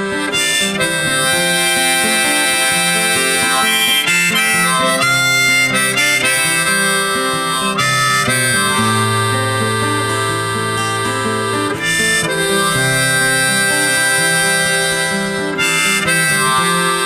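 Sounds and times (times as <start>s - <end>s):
acoustic guitar: 0.0s - 17.0s
harmonica: 0.0s - 17.0s.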